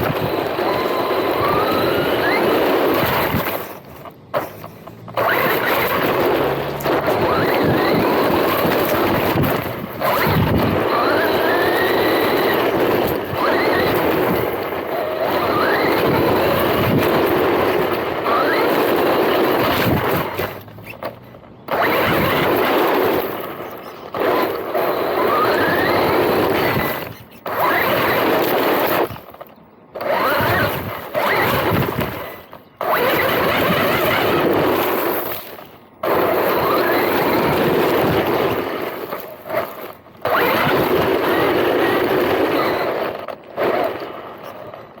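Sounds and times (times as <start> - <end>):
rc car motor whine: 0.0 - 45.0.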